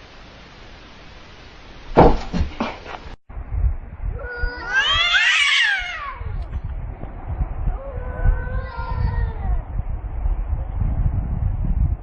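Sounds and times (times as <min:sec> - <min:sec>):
short bumps: 0:01.9 - 0:03.2
cat meowing: 0:04.2 - 0:06.4, 0:07.8 - 0:09.6.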